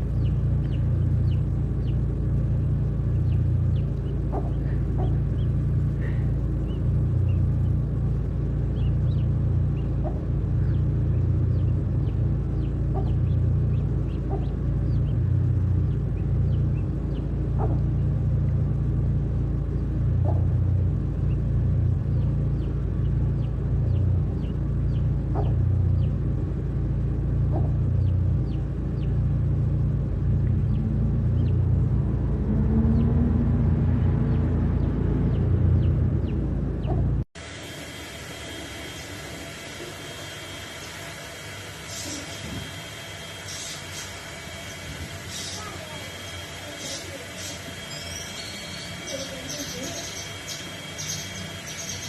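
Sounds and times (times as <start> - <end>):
loud low rumble: 0.0 - 52.0
fowl peeping: 3.8 - 6.8, 9.8 - 10.9, 12.5 - 15.2, 17.5 - 17.9, 24.9 - 25.7.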